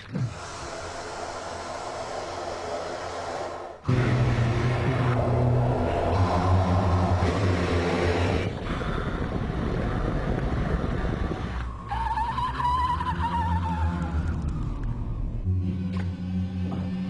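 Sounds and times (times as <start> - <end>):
breathy vocal hiss: 0.2 - 3.9
choir humming low: 3.8 - 8.7.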